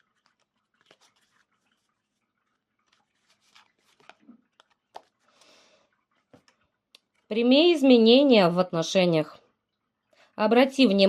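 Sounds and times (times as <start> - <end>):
cards being shuffled: 0.0 - 5.5.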